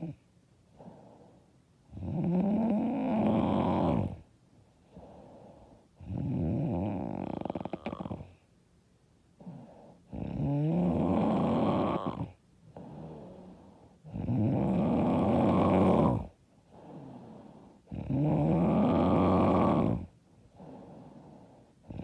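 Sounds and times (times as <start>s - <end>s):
quiet breathing: 0.0s - 22.0s
woman snoring loudly: 1.9s - 4.2s, 6.0s - 8.3s, 9.4s - 22.0s.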